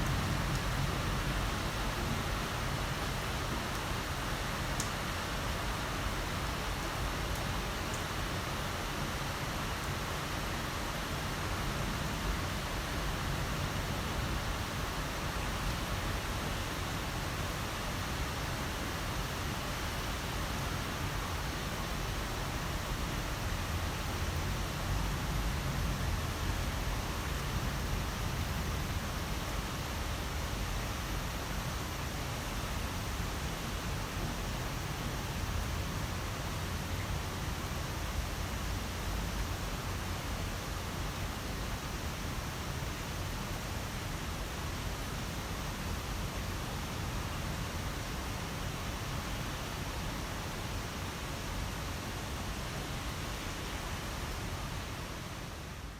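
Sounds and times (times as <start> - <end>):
raindrop ticks: 0.0 - 0.8, 4.8 - 5.0
heavy rain falling: 0.0 - 55.9.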